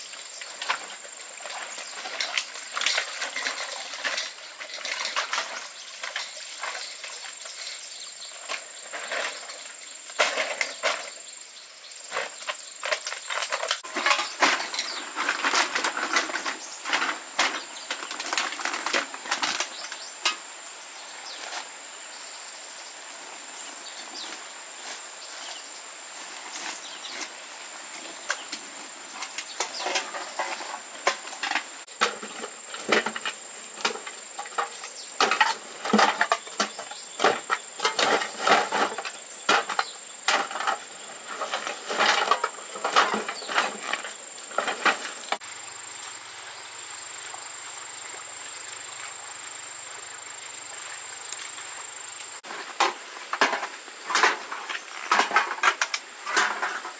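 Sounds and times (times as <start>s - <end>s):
high insect drone: 0.0s - 56.9s.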